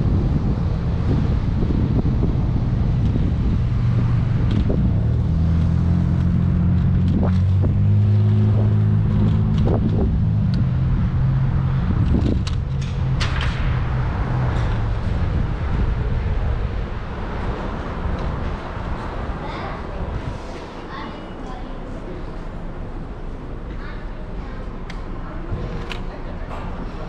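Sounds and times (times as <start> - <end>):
wind rushing over microphone: 0.0 - 21.0
engine drone: 0.0 - 27.0
vehicle rumble: 0.0 - 27.0.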